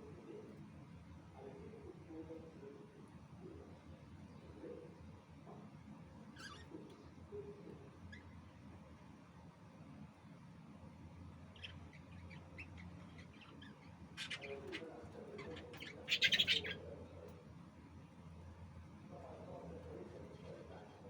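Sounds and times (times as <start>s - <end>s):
lovebirds chirping: 11.5s - 16.8s
rapid bird chattering: 11.5s - 17.0s.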